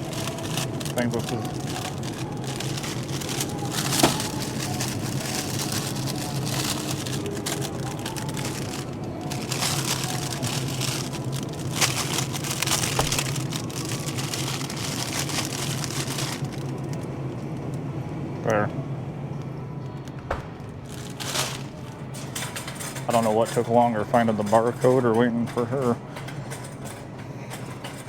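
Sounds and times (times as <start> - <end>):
steady low hum: 0.0 - 28.0
rustling and crackling: 20.0 - 22.9.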